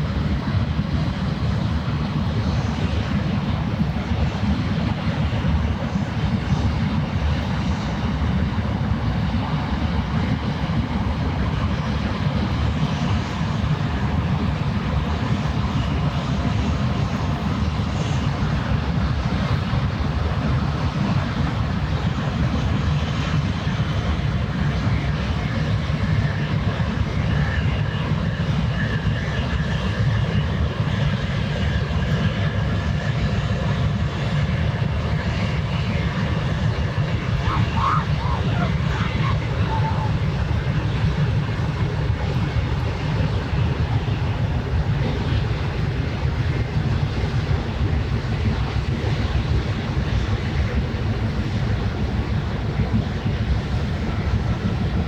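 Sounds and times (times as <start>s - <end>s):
water: 0.0s - 55.0s
ship engine drone: 31.6s - 49.6s.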